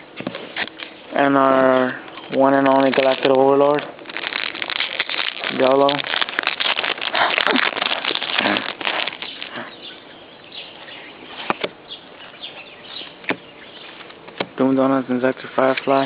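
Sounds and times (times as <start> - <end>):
wrapper tearing and crinkling: 2.1 - 9.8.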